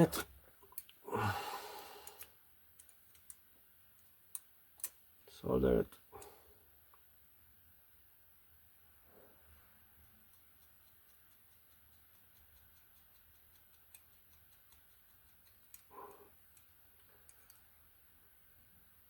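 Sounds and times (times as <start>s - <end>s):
faint even ticking: 9.9s - 17.6s.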